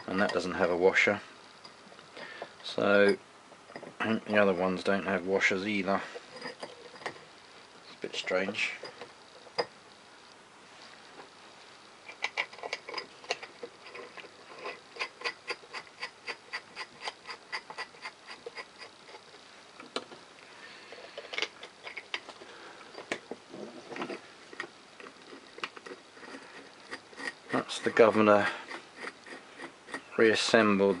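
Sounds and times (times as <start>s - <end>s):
metal parts clicking and tapping: 12.1s - 19.2s, 21.1s - 22.4s, 23.9s - 31.0s.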